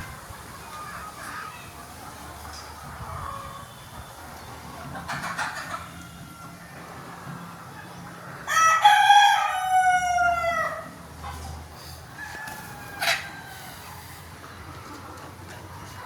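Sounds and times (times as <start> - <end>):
rooster crowing: 8.4 - 11.0, 12.1 - 14.0.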